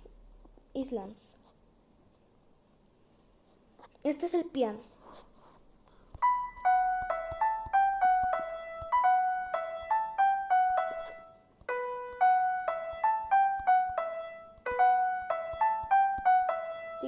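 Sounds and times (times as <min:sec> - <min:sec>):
electronic keyboard piano melody: 0:06.2 - 0:17.0.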